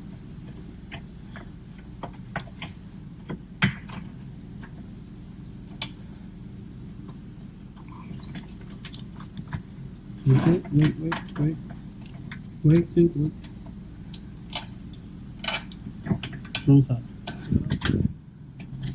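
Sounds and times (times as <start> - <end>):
steady low hum: 0.0 - 18.9
metallic clicks and taps of tools: 13.4 - 17.9.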